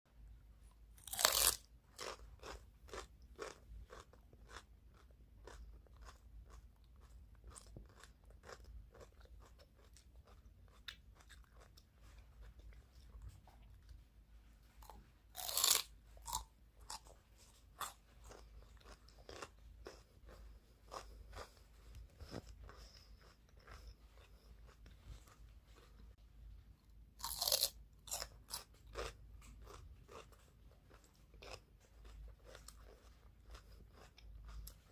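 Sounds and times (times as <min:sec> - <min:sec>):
crunchy chewing: 0:00.9 - 0:14.0, 0:14.6 - 0:26.2, 0:26.8 - 0:34.9
loud crunchy bites: 0:01.0 - 0:05.6, 0:15.4 - 0:17.0, 0:27.2 - 0:29.1.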